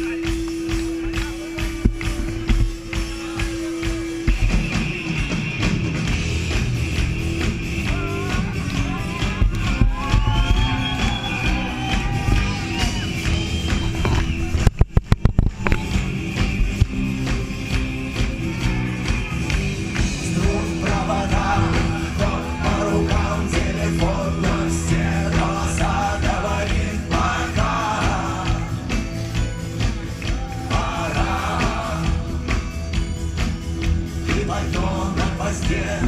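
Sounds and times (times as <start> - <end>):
rock band playing live: 0.0 - 36.0
person singing: 20.2 - 29.0.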